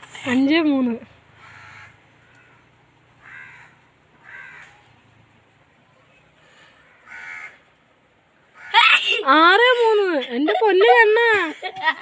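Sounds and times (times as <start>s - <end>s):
crow cawing: 1.4s - 4.9s, 6.8s - 7.7s, 8.5s - 9.0s.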